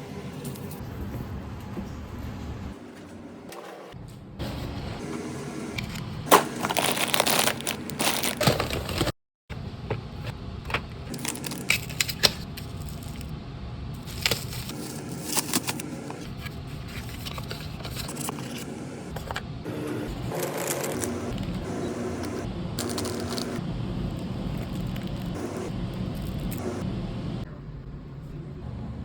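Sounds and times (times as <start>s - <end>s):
packaging clicks and rattles: 6.3s - 9.1s, 11.1s - 13.3s, 14.0s - 15.8s, 22.2s - 26.7s
packaging rustling: 6.3s - 9.1s, 11.1s - 13.3s, 14.0s - 18.6s, 20.3s - 26.8s.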